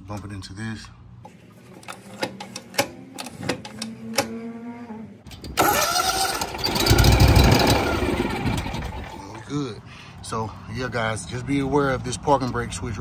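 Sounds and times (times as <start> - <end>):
mower engine running loudly: 5.6 - 9.2.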